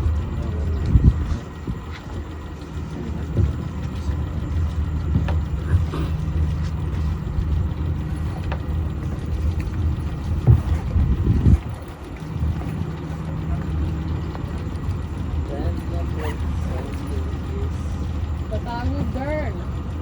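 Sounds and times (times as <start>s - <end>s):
boat motor running: 0.0s - 20.0s.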